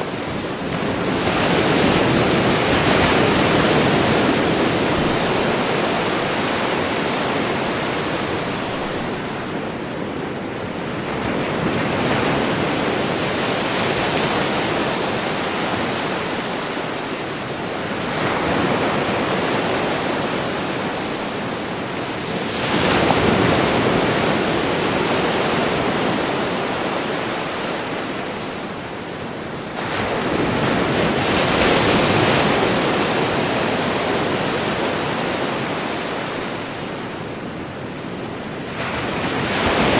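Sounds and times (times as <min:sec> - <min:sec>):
sea waves breaking on shore: 0:00.0 - 0:39.9.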